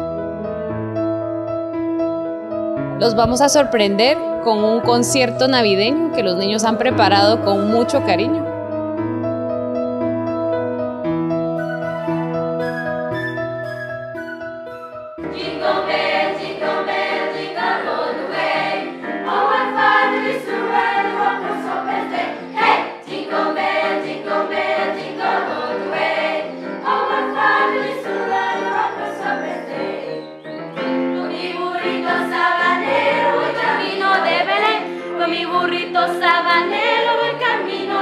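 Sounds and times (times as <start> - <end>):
instrumental accompaniment: 0.0 - 38.0
children's choir singing: 15.2 - 38.0.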